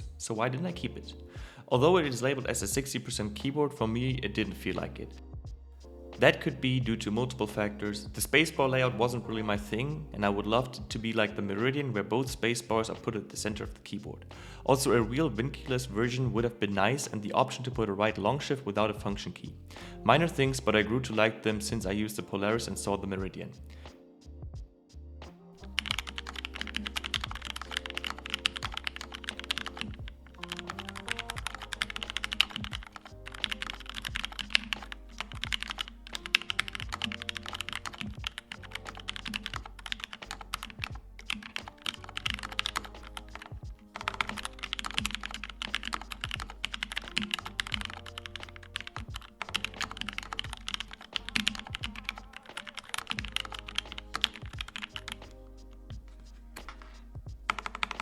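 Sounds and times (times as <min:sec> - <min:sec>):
background music: 0:00.0 - 0:58.0
mechanical keyboard typing: 0:25.7 - 0:55.3, 0:56.6 - 0:58.0.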